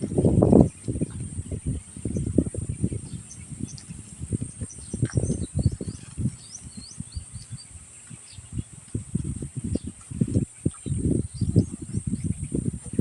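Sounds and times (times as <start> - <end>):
faint bird chirps: 0.7 - 8.8.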